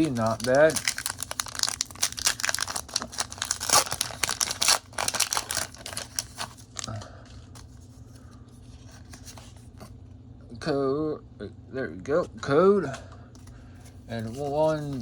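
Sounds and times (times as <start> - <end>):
foil wrapper crinkling and tearing: 0.0 - 7.0.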